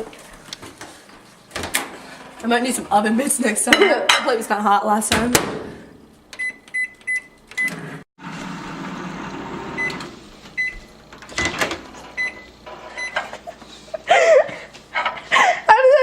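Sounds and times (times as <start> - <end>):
microwave oven humming: 0.0 - 16.0
microwave keypad beeps: 6.4 - 7.8, 9.8 - 10.0, 10.6 - 11.6, 12.2 - 13.2.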